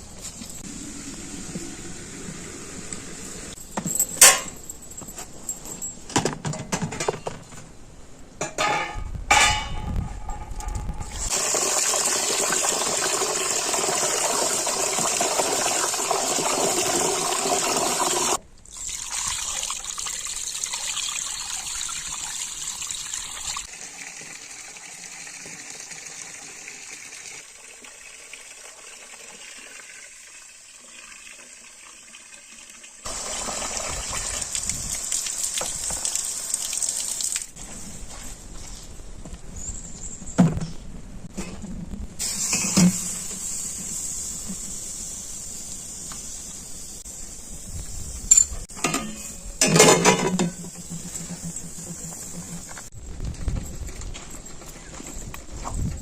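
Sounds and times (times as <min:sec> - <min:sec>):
water running: 0:11.0 - 0:37.6.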